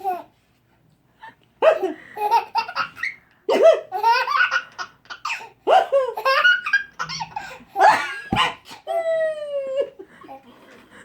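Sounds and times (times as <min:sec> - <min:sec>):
baby laughing: 0:02.2 - 0:09.0.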